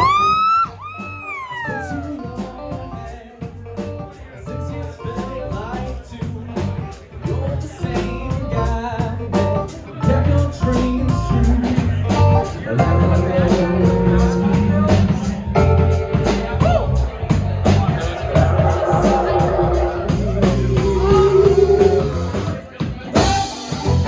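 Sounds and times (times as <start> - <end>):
live band playing: 0.0 - 24.0.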